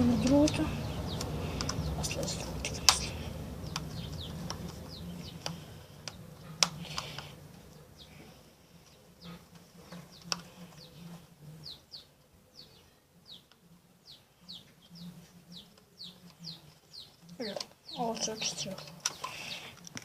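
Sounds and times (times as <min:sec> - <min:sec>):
small bird chirping: 0:00.0 - 0:19.8
sharp clicks: 0:00.2 - 0:07.4.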